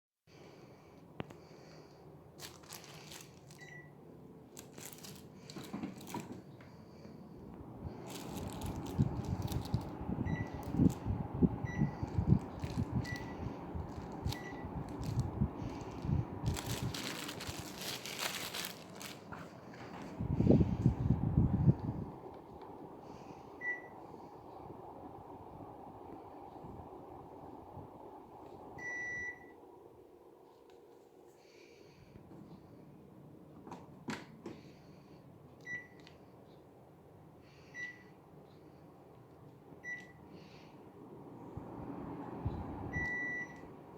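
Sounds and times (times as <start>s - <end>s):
air conditioner beeping: 2.0s - 30.9s, 32.1s - 41.3s, 42.3s - 43.9s
air conditioner short high beeps: 3.6s - 4.0s, 10.2s - 13.6s, 14.2s - 15.0s, 23.6s - 24.0s, 28.8s - 29.6s, 35.6s - 36.1s, 37.6s - 38.2s, 39.8s - 40.3s, 42.9s - 43.7s.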